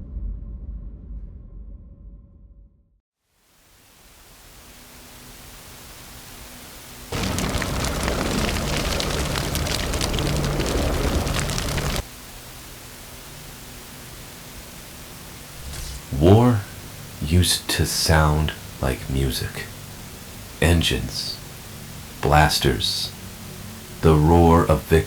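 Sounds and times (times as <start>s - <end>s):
steady hiss: 3.4s - 25.0s
loud crackling rumble: 7.1s - 12.4s.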